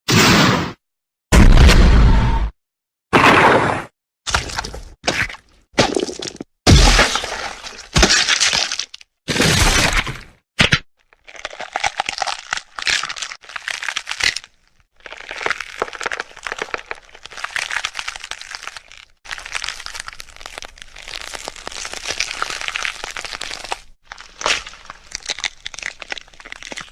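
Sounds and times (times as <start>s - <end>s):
dense crackling and crunching: 11.1s - 26.9s.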